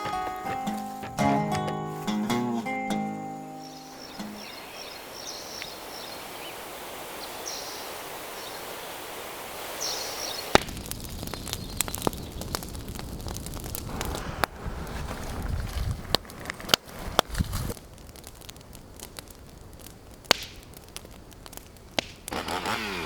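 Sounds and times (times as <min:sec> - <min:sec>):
steady outdoor hiss: 0:00.0 - 0:23.0
faint bird chirps: 0:03.3 - 0:09.0, 0:09.8 - 0:10.5
small crackles and rustles: 0:10.5 - 0:22.4.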